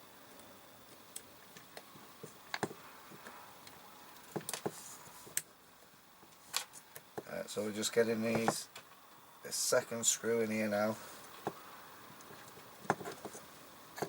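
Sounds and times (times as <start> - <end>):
small parts clicking and tapping: 0.3 - 5.5, 11.2 - 13.4.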